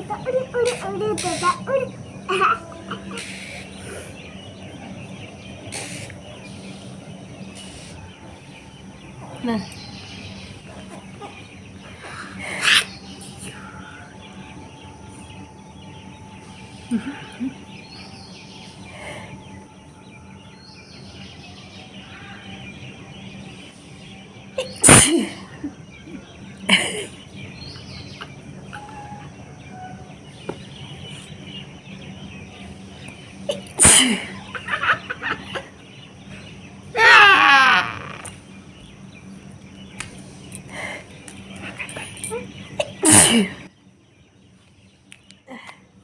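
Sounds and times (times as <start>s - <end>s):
birds chirping faintly: 0.0s - 46.0s
person sneezing: 24.8s - 25.3s.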